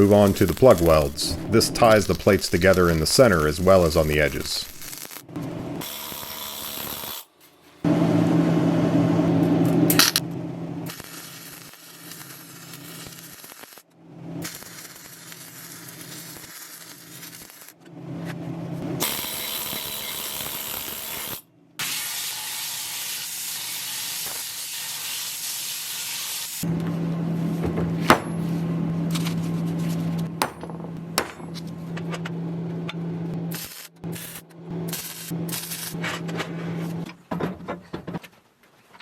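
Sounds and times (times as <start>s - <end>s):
welding arc crackling sizzle: 0.0s - 7.3s, 9.3s - 10.2s, 10.8s - 17.9s, 18.8s - 26.7s, 33.3s - 36.0s.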